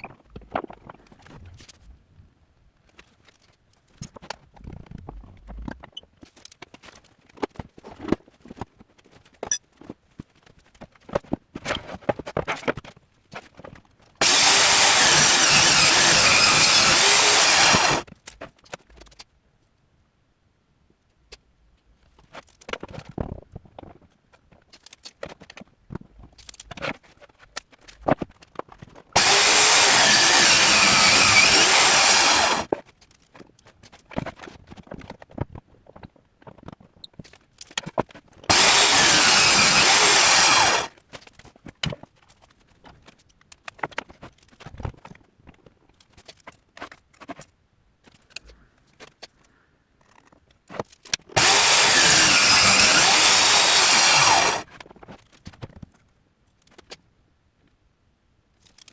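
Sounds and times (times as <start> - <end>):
power tool running: 14.2 - 18.0, 29.2 - 32.7, 38.5 - 40.9, 51.4 - 54.6.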